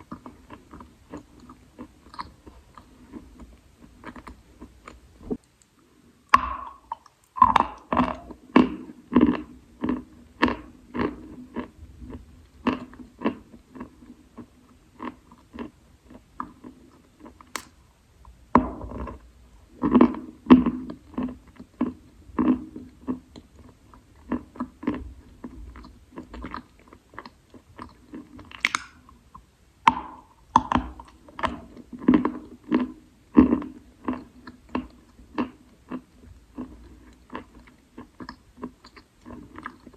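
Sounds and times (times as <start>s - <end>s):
person chewing chalk crunches: 25.8s - 29.1s.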